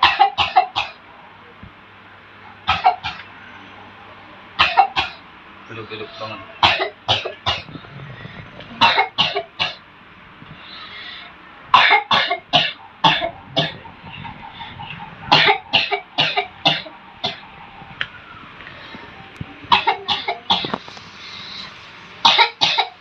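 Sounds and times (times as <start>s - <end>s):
person coughing: 15.3s - 17.4s.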